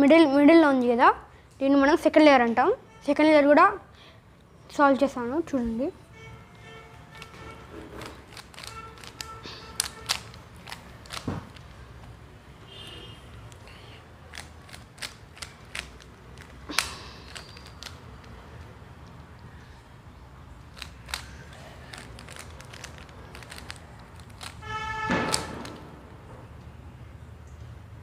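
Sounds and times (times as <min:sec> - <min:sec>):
plastic puzzle cube clicking: 0:08.0 - 0:11.8, 0:13.4 - 0:19.5, 0:20.6 - 0:25.9.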